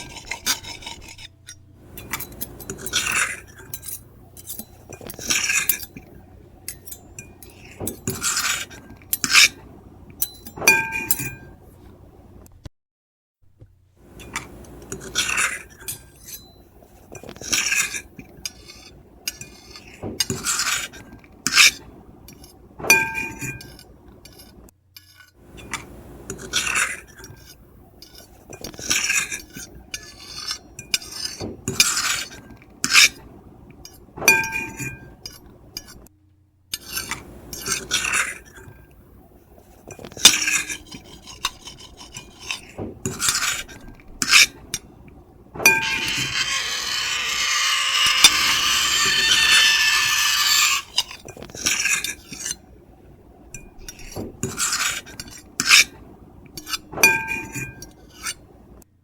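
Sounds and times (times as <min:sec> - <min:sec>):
fork and knife scraping a plate: 0:00.0 - 0:11.6, 0:14.1 - 0:36.1, 0:36.7 - 0:39.0, 0:39.6 - 0:44.9, 0:45.6 - 0:52.7, 0:53.5 - 0:58.5
cutlery clinking on plate: 0:10.2 - 0:11.6, 0:21.5 - 0:23.9, 0:34.2 - 0:36.0, 0:45.6 - 0:52.6, 0:56.6 - 0:58.4.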